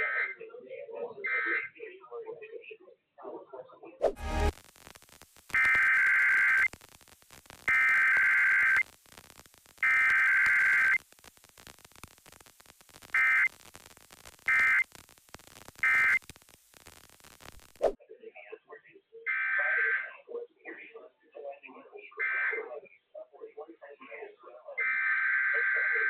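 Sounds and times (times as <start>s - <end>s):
faint hiss: 4.0s - 18.0s.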